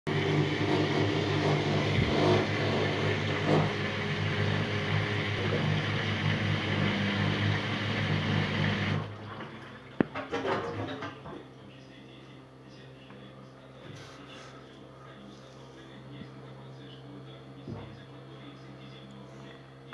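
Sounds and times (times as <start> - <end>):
washing machine spinning: 0.1 - 12.1.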